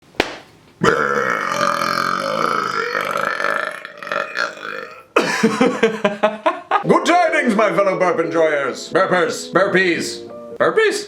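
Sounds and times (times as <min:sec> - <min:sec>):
man burping: 0:00.8 - 0:05.5.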